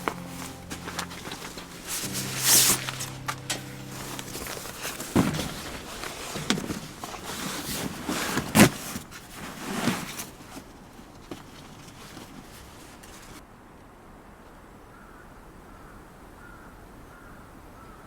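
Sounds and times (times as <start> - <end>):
background music: 0.0 - 6.7.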